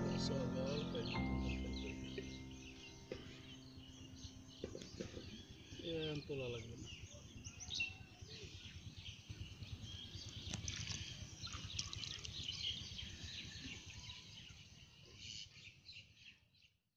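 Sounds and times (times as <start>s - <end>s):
small birds chirping: 0.0s - 16.5s.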